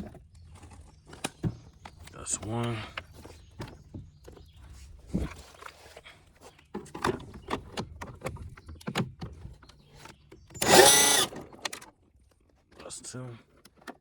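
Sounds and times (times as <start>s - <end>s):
cordless drill whirring: 10.6s - 11.4s.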